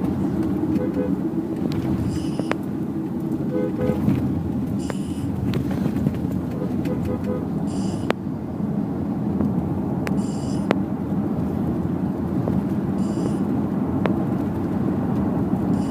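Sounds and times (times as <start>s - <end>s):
car road and engine rumble: 0.0s - 15.9s
sharp clicks: 0.4s - 3.4s, 4.6s - 8.2s, 13.0s - 14.2s.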